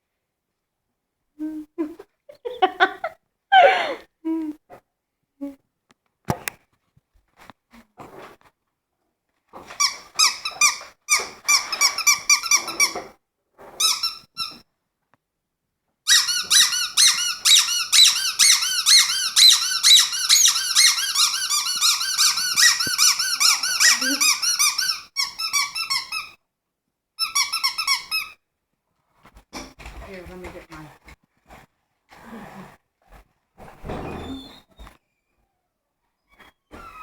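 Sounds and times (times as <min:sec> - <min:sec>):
squeaky dog toy squeaking: 0:09.8 - 0:13.1, 0:13.8 - 0:14.7, 0:16.1 - 0:26.4, 0:27.2 - 0:28.4.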